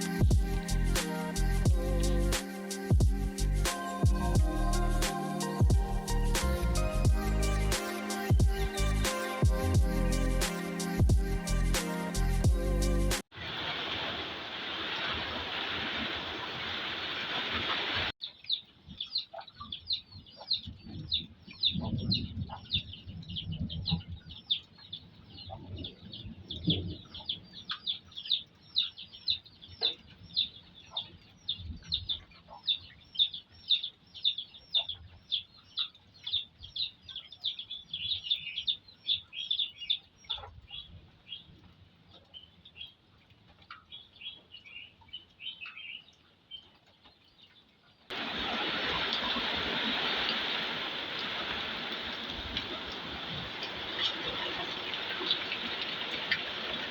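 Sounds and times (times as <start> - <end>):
low rumbling thuds: 0.2 - 0.7, 2.9 - 3.3, 4.1 - 4.6, 5.6 - 6.5, 8.3 - 8.7, 9.5 - 10.0
bird chirping: 18.2 - 43.0, 43.7 - 47.7.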